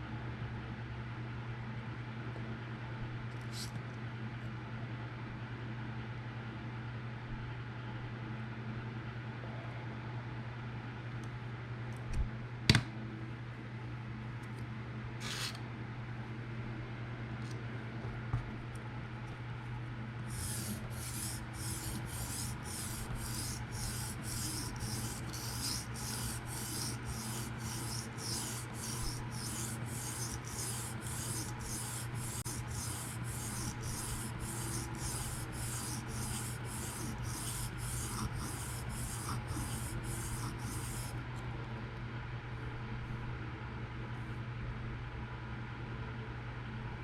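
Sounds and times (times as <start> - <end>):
knife rasping on sharpening stone: 20.3 - 41.1.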